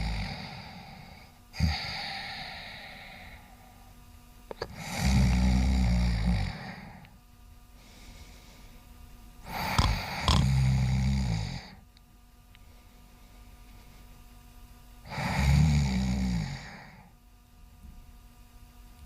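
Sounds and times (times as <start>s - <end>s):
cat snoring: 0.0s - 3.4s, 4.7s - 7.0s, 9.4s - 11.8s, 15.0s - 17.1s.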